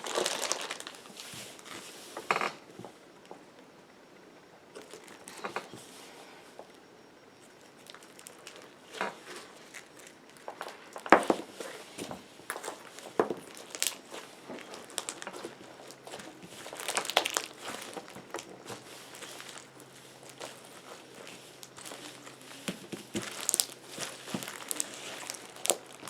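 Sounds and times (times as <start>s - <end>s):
slime crackling and popping: 0.0s - 1.0s, 7.8s - 8.8s, 12.5s - 26.0s.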